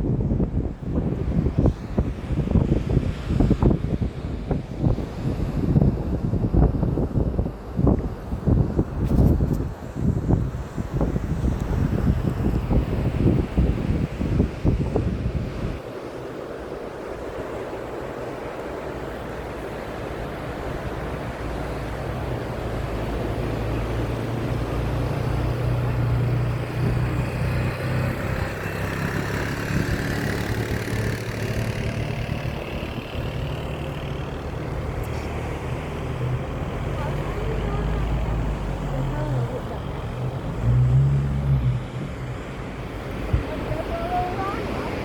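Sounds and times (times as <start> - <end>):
wind: 0.0 - 45.0
vehicle engine driving: 18.6 - 45.0
surf: 28.0 - 45.0.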